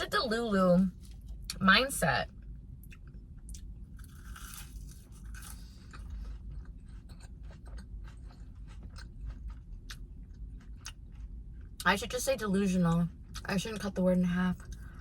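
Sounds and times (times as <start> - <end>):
chewing with soft crunching: 2.3 - 11.9, 14.5 - 15.0.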